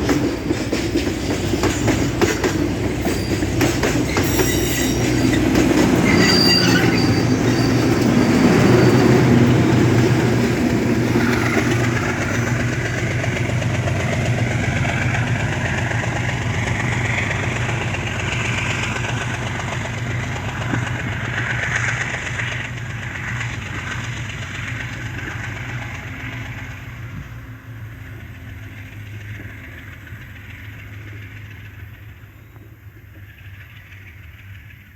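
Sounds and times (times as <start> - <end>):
train wheel squeal: 0.0 - 27.3
freight train rolling past: 0.0 - 34.9.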